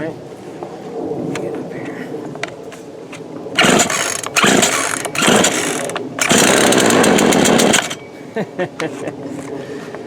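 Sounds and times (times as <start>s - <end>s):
chainsaw engine turning over: 3.6s - 8.0s
chainsaw recoil starter pulls: 3.6s - 8.0s.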